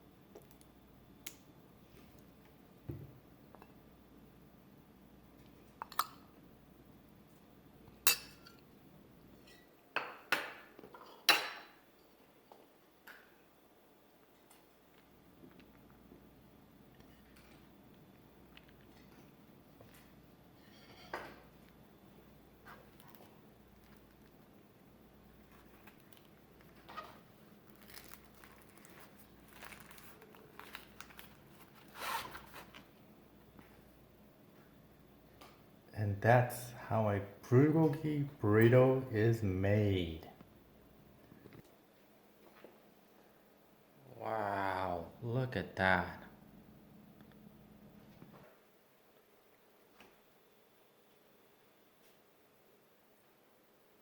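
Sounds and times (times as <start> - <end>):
wrapper rustling and crinkling: 25.4 - 33.0.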